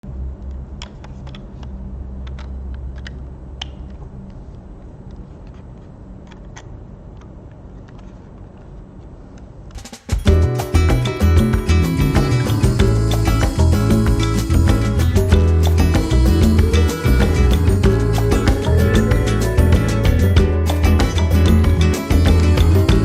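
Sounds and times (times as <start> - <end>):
steady low hum: 0.0 - 23.0
music: 9.8 - 23.0.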